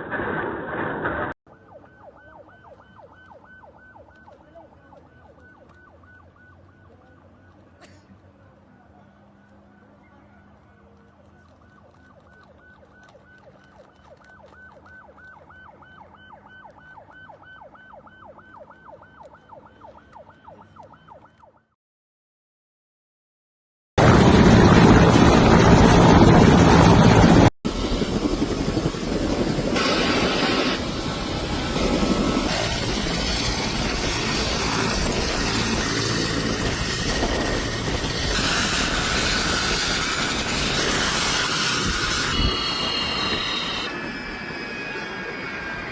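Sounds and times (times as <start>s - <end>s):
emergency siren fast yelp: 1.5s - 7.7s, 11.3s - 21.8s, 29.8s - 45.9s
loud steady rushing noise: 24.0s - 44.6s.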